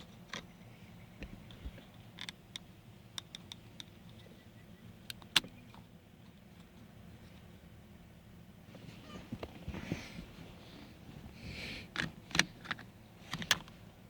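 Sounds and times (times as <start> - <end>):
small metallic clicks and taps: 1.2 - 4.3.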